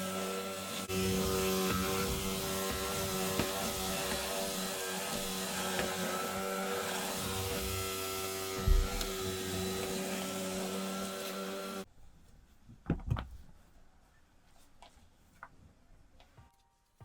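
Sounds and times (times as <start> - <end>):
appliance motor humming: 0.0 - 11.8.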